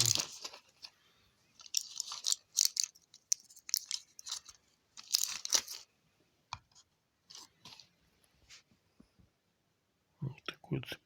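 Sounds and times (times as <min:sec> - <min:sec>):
packaging crackling: 0:00.0 - 0:00.9, 0:01.6 - 0:05.9.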